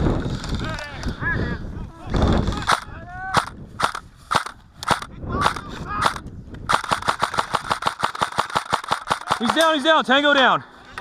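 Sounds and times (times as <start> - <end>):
airsoft gun full-auto burst: 3.4 - 9.8.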